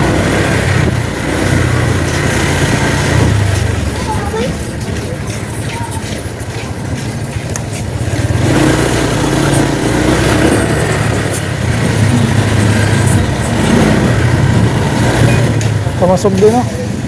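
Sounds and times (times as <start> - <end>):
road and air noise: 0.0 - 17.0
vehicle engine running: 0.0 - 17.0.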